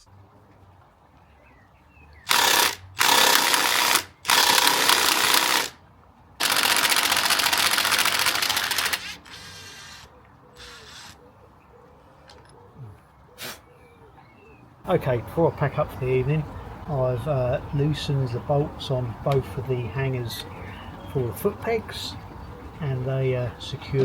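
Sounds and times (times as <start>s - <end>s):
power drill drilling: 2.3s - 5.8s, 6.4s - 11.2s.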